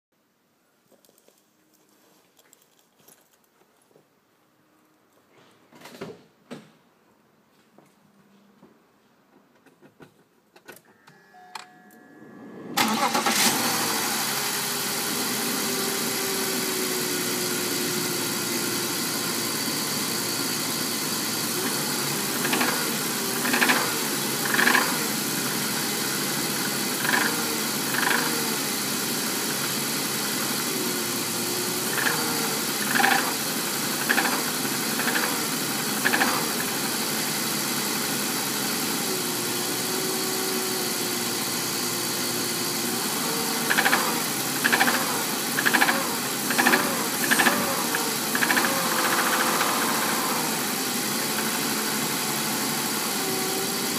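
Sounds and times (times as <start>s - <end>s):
car engine idling: 12.8s - 39.7s, 40.6s - 53.9s.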